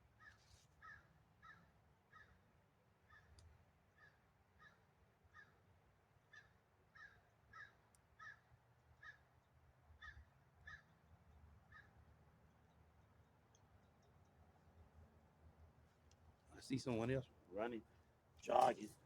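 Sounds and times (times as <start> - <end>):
faint short bird calls: 0.2 - 2.4.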